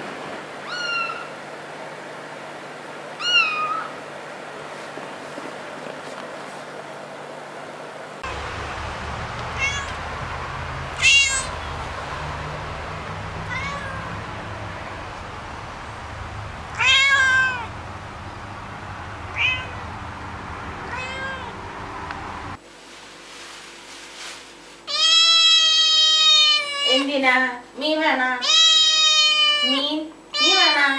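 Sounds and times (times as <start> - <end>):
cat meowing: 0.6 - 1.3, 3.2 - 3.9, 9.3 - 17.8, 19.0 - 20.0, 20.8 - 21.7, 24.9 - 27.0, 28.4 - 29.8
steady low hum: 8.2 - 22.6.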